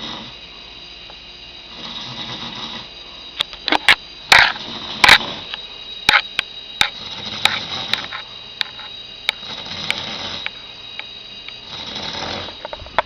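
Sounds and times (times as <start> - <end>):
man snoring: 0.0 - 0.4, 1.7 - 2.9, 4.5 - 5.5, 7.0 - 8.0, 9.4 - 10.5, 11.6 - 12.6.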